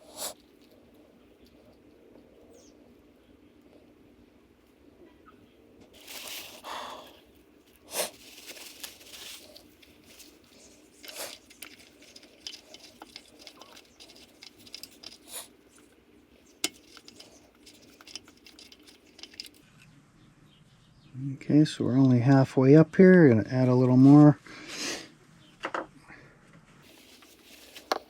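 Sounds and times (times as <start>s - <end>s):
rustling of handled parts: 5.9s - 19.7s, 26.8s - 28.0s.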